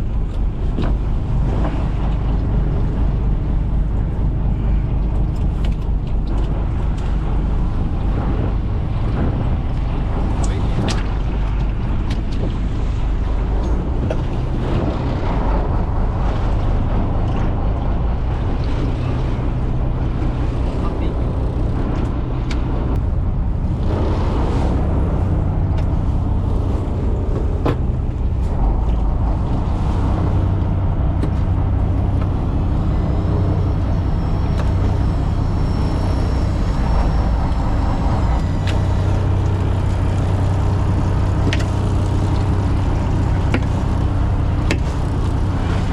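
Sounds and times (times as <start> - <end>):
boat engine humming: 0.0 - 45.9.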